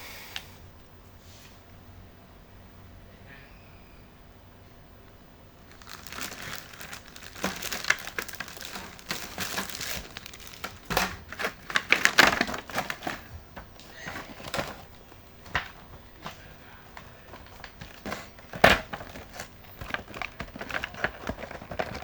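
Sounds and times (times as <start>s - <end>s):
packaging crinkling and rustling: 5.6s - 22.0s.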